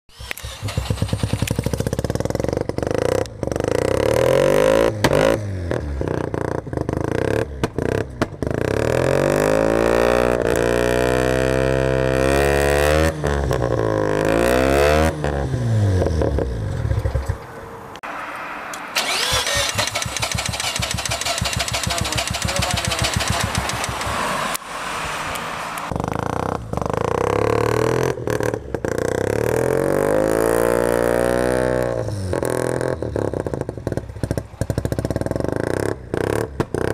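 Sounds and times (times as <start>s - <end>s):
rapid even clatter: 19.0s - 24.2s.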